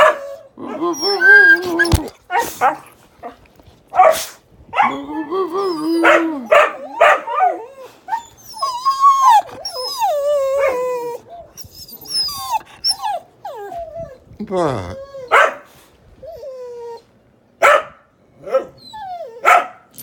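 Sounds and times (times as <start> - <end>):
dogs whining and howling: 0.0 - 2.7, 4.8 - 14.3, 15.0 - 15.5, 16.2 - 17.2, 18.3 - 20.0.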